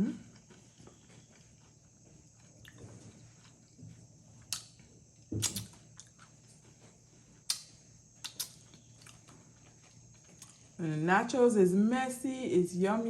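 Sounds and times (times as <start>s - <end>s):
tortilla chips crunching: 8.2s - 10.8s.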